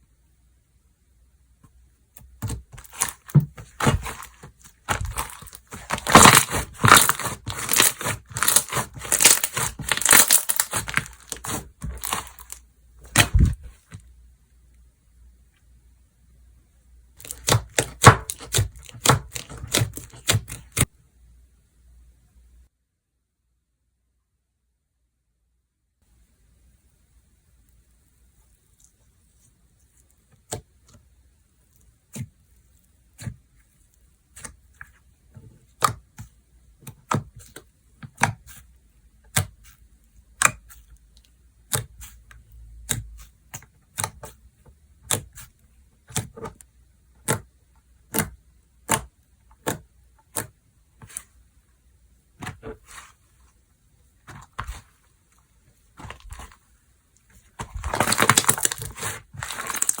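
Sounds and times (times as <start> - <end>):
slime crackling: 2.4 - 13.6, 17.2 - 20.9, 57.3 - 60.0.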